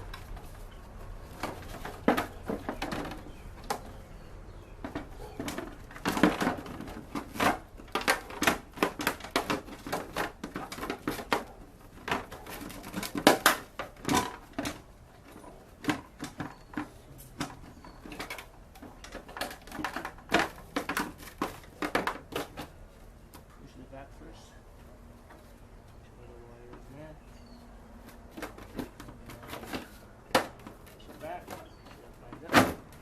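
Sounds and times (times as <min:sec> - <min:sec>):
plastic parts clicking and rattling: 0:04.8 - 0:22.8.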